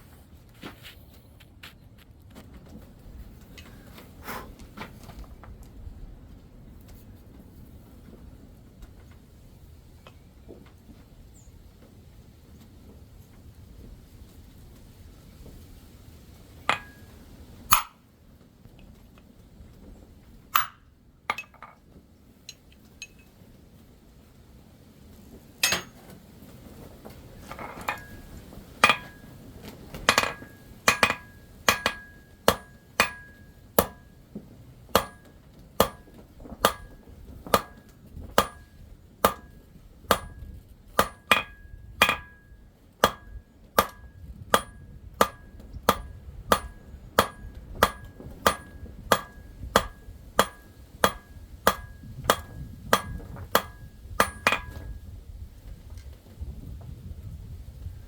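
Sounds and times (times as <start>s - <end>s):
hammer striking metal: 16.7s - 17.0s, 17.7s - 18.0s, 20.6s - 21.6s, 25.6s - 26.0s, 28.8s - 29.2s, 30.1s - 34.1s, 35.0s - 39.5s, 40.1s - 40.4s, 41.0s - 42.4s, 43.0s - 54.9s.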